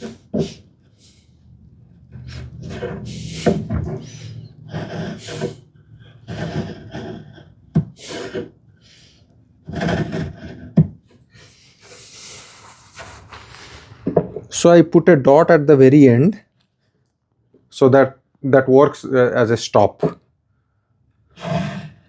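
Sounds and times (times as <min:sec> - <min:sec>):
marking gauge scraping wood: 0:00.0 - 0:10.9, 0:21.4 - 0:22.0.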